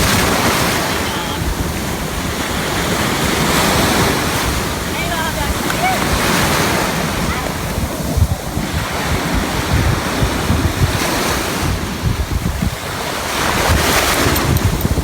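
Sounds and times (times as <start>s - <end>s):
ocean surf washing onto beach: 0.0s - 15.0s
wind buffeting microphone: 0.0s - 15.0s.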